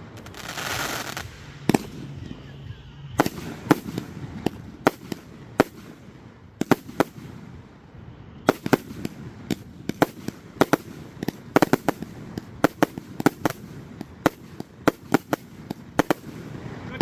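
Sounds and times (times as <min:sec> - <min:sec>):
fireworks bangs: 0:00.0 - 0:17.0.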